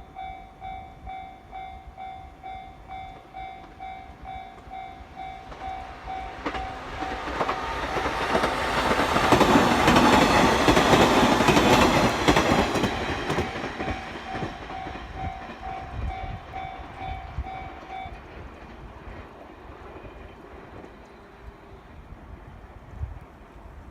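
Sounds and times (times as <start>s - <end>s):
level crossing warning bell: 0.0s - 8.4s, 9.2s - 18.3s
train wheels clattering over rail joints: 5.4s - 21.0s.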